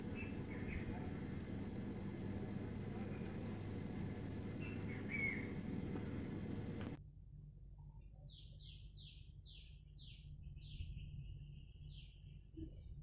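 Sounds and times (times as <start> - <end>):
faint bird chirps: 0.0 - 6.6
low background rumble: 0.0 - 7.8.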